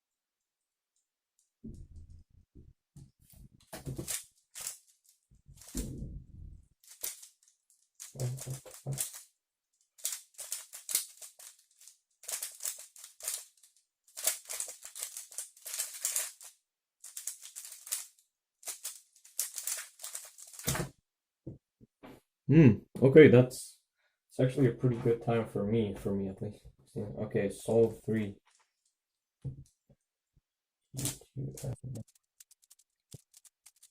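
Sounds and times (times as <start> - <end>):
plastic puzzle cube clicking: 6.9 - 9.2, 10.0 - 20.6, 31.0 - 33.9.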